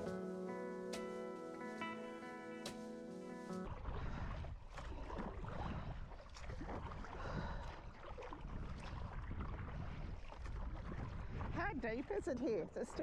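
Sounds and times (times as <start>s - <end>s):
water splashing around kayak: 3.4s - 13.0s
wind buffeting microphone: 3.6s - 13.0s.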